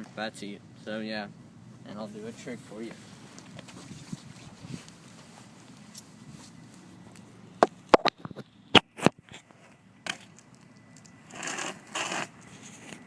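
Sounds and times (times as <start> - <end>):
rough scuffs: 2.1 - 7.2.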